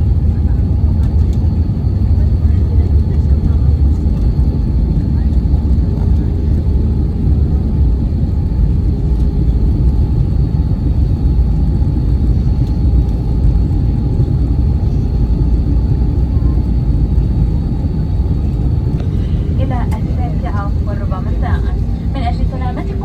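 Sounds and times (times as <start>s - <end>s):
airliner cabin engine rumble: 0.0s - 23.0s.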